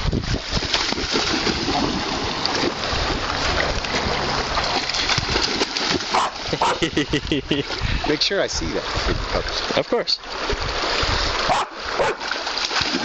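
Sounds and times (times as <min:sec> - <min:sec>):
wind buffeting microphone: 0:00.0 - 0:09.6, 0:10.3 - 0:12.2
river water rushing: 0:00.7 - 0:06.9, 0:07.6 - 0:13.0.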